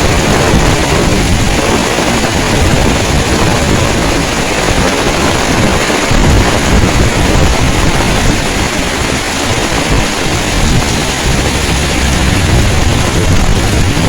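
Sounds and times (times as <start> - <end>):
heavy rain pouring: 0.0 - 14.0
wind buffeting microphone: 0.0 - 14.0.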